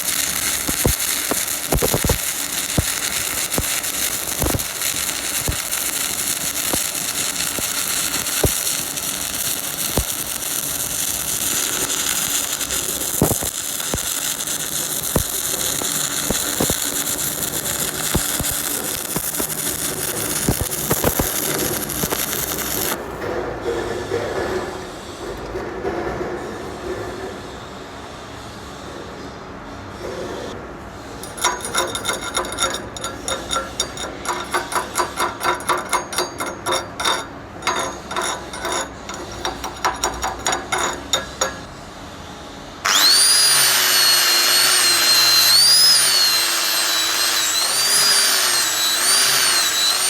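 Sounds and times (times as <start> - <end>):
welding arc frying hiss: 0.0 - 23.0, 42.9 - 50.0.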